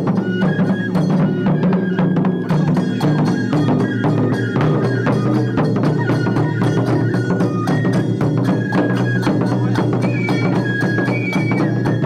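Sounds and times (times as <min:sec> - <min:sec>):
bamboo flute playing high notes: 0:00.0 - 0:12.0
drums and percussion: 0:00.0 - 0:12.0.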